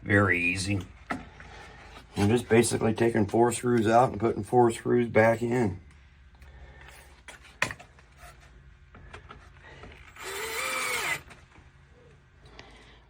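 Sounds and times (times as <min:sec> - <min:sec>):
drill motor whine: 0:10.0 - 0:11.3.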